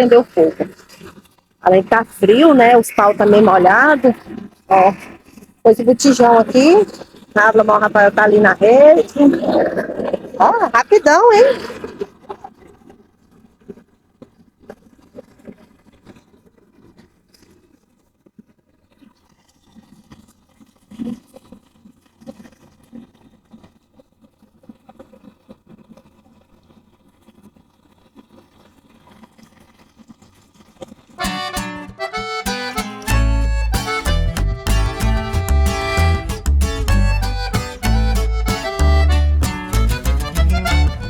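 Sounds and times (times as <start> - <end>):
bonfire crackling: 31.2 - 41.0.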